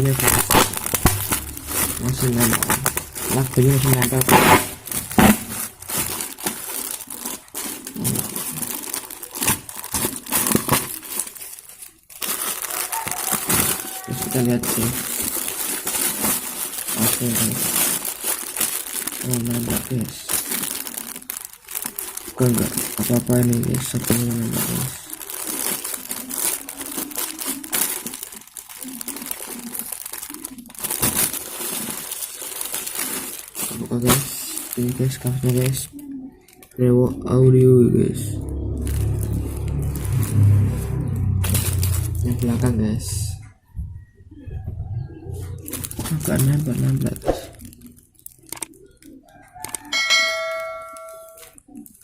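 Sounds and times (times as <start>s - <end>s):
packing tape tearing: 0.0s - 35.8s
packaging crinkling: 0.0s - 36.8s, 38.4s - 43.1s, 45.1s - 52.0s.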